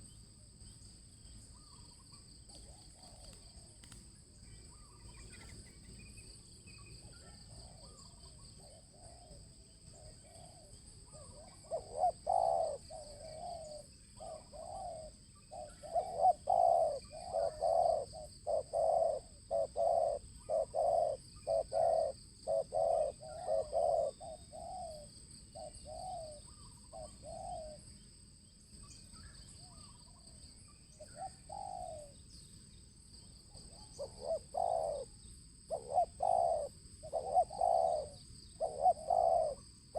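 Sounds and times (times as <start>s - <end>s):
dove cooing: 2.5s - 3.9s, 7.0s - 27.8s, 31.0s - 32.2s, 33.6s - 39.7s.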